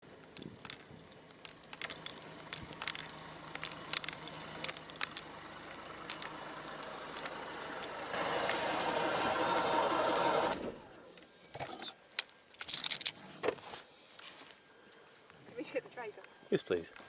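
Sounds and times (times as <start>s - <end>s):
sharp clicks and rattles: 0.0s - 9.0s, 11.6s - 13.2s
vehicle engine idling: 0.0s - 11.0s.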